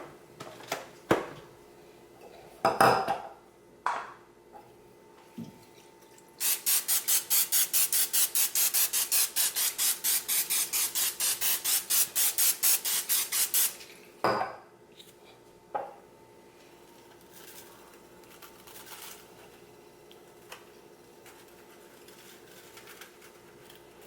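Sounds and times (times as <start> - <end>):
seasoning shaker rattling: 6.4 - 13.8, 17.1 - 19.6, 20.3 - 24.0.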